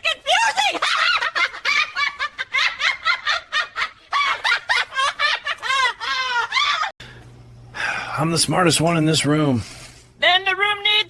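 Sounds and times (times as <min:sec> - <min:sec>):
high-pitched laughter: 0:00.0 - 0:06.9.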